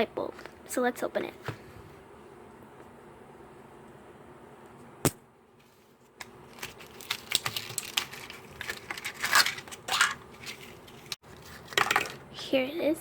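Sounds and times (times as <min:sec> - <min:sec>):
packaging crinkling and tearing: 0:06.2 - 0:11.1.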